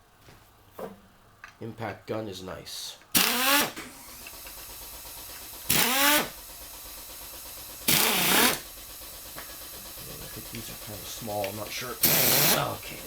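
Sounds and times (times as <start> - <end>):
impact gun bursts: 3.2 - 13.0.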